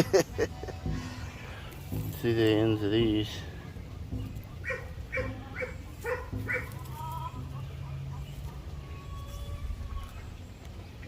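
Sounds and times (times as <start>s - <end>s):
dog barking in yips: 4.6s - 6.7s.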